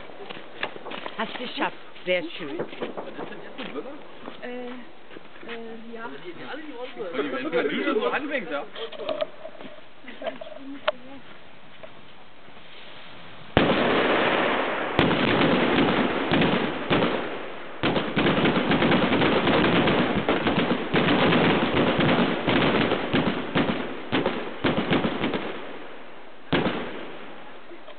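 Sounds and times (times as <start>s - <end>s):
firecrackers banging: 0.0s - 4.9s, 12.6s - 27.9s.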